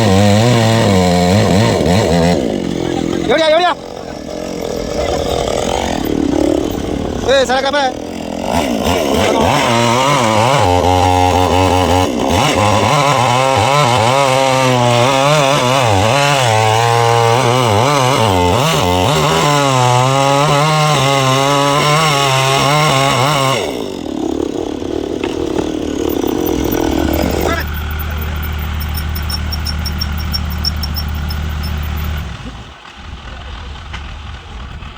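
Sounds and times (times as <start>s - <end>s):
chainsaw cutting wood: 0.0s - 32.6s
low steady engine hum: 25.3s - 34.9s.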